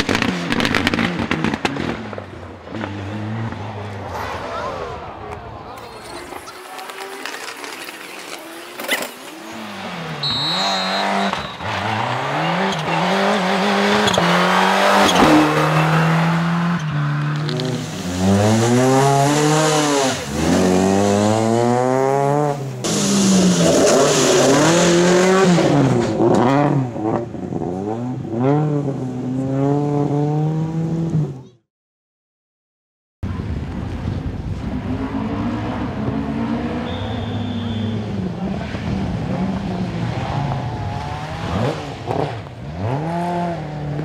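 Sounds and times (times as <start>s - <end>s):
rally car engines revving: 0.0s - 31.6s, 33.9s - 44.0s
tyre squeal: 5.8s - 13.4s, 36.8s - 38.0s.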